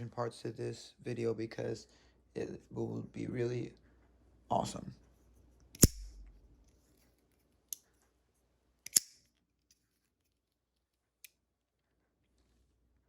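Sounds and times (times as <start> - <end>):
knife clicking: 5.8 - 6.4, 8.9 - 9.2
sharp metallic snap: 5.8 - 6.4, 8.9 - 9.2.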